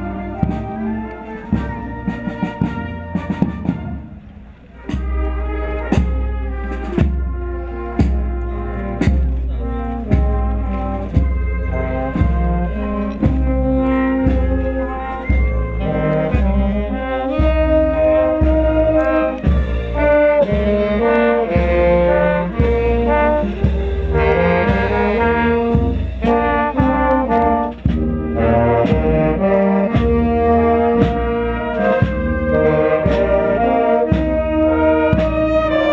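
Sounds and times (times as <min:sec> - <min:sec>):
brass band playing: 0:00.0 - 0:35.9
drum beat: 0:17.4 - 0:35.8.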